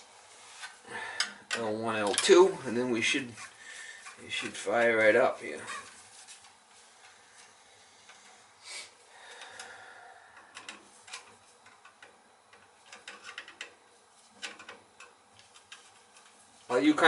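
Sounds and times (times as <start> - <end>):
small clicks and light scrapes: 10.5 - 16.7.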